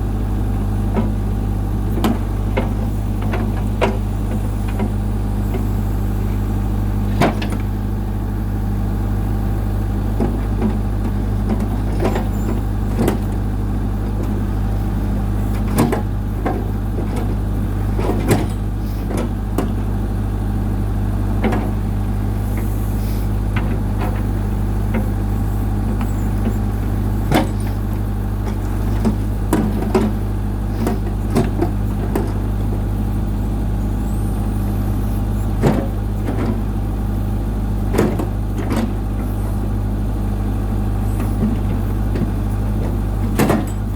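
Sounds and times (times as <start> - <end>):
diesel engine running: 0.0 - 43.9
sharp knocks and clanks: 41.2 - 43.9.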